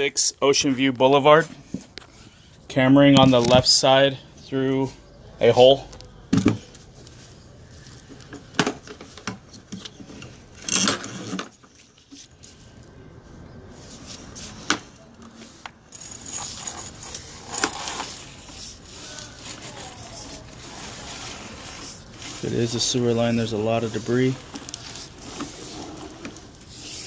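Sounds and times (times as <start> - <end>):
cable scraping in pipe: 15.4 - 27.0.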